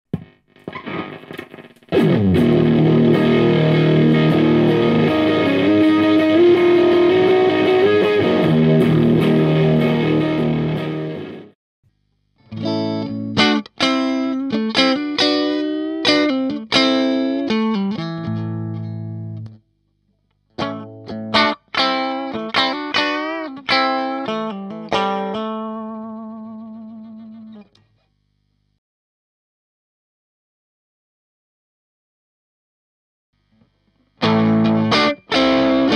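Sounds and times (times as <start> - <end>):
overdriven electric guitar: 0.2 - 11.6, 12.4 - 19.6, 20.5 - 27.8, 34.2 - 35.9.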